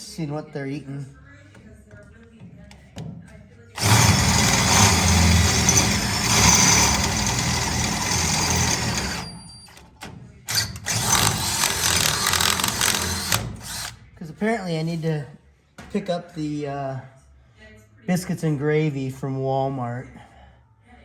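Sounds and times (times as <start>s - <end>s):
power drill motor running: 3.8s - 9.7s, 10.5s - 14.0s.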